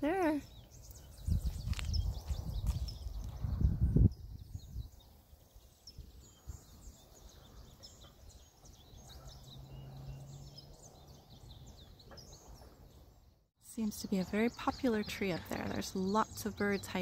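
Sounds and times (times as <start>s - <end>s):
small birds chirping: 0.0s - 17.0s
low rumble on microphone: 0.9s - 5.1s.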